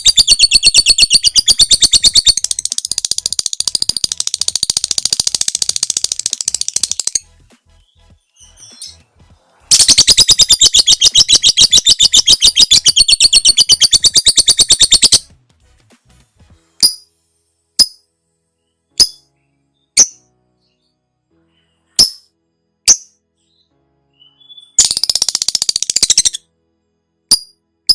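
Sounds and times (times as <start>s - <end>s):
lovebird chattering: 0.0s - 7.2s, 9.7s - 15.2s
sharp bird chirps: 0.0s - 9.0s, 9.7s - 15.3s, 22.9s - 26.5s.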